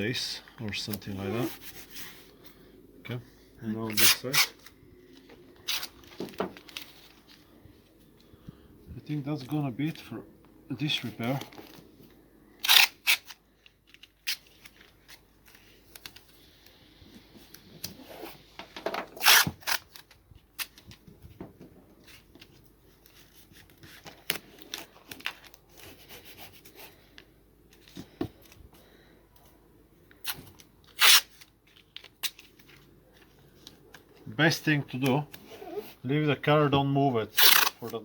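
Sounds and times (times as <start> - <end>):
rustling and rubbing: 1.1 - 2.5.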